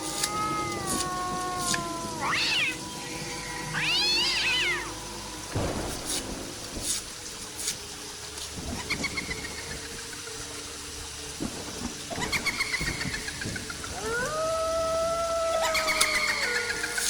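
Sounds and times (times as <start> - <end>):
meow-like animal cries: 0.0 - 5.0, 14.0 - 17.0.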